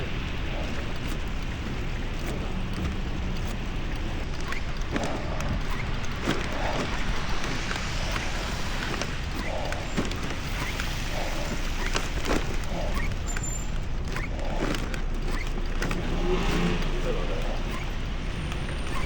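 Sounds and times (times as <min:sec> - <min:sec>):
passing traffic: 0:00.0 - 0:19.0
wind buffeting microphone: 0:00.0 - 0:19.0
bicycle tyres hissing on wet road: 0:05.7 - 0:13.8.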